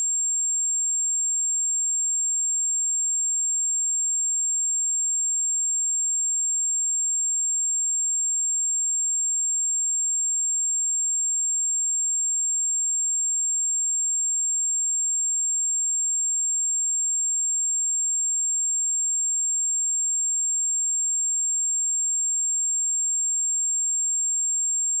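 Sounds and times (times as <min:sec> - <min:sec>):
high-pitched sine test tone: 0:09.4 - 0:25.0.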